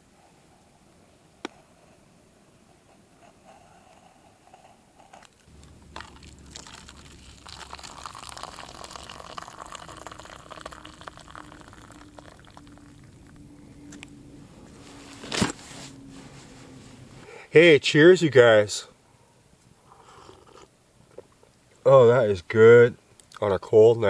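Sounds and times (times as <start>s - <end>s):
coffee pouring into cup: 5.5s - 13.8s.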